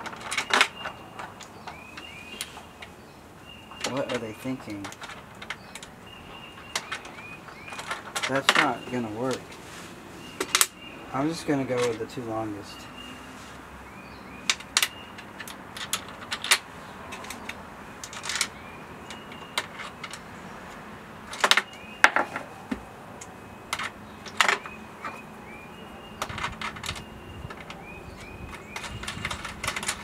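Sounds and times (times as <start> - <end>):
metal parts clicking and clinking: 0.0 - 2.9, 3.7 - 9.4, 11.4 - 12.2, 14.4 - 20.3, 23.2 - 25.2, 26.2 - 30.0.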